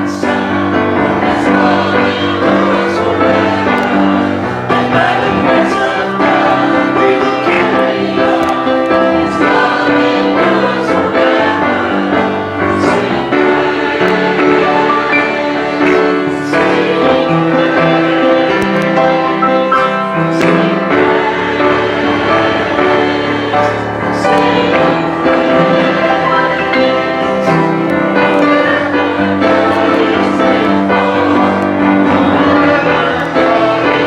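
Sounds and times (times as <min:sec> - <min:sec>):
worship song with singing voices: 0:00.0 - 0:34.0.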